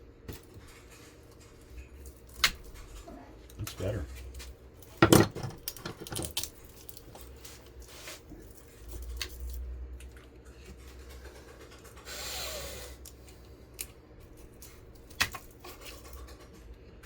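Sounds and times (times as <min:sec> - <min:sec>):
scraping rub: 0:07.3 - 0:09.2.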